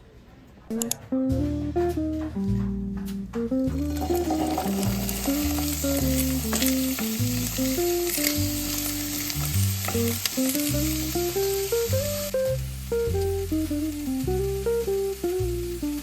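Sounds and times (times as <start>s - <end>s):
background music: 0.7s - 16.0s
food sizzling in a pan: 3.8s - 16.0s.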